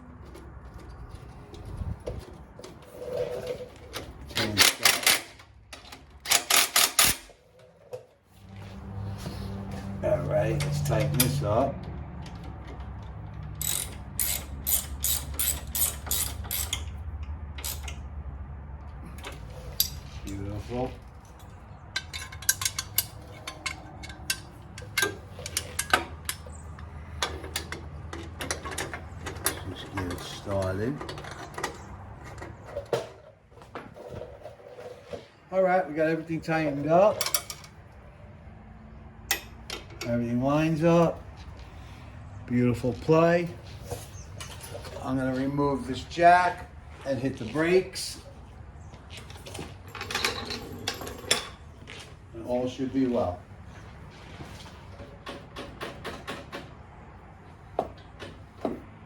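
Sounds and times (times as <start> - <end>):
metal tools clicking and clinking: 3.9 - 7.7, 12.2 - 18.0, 19.2 - 33.1, 37.1 - 37.8, 39.3 - 40.2, 44.3 - 45.5, 49.1 - 52.0
ratchet wrench clicking: 13.6 - 17.0.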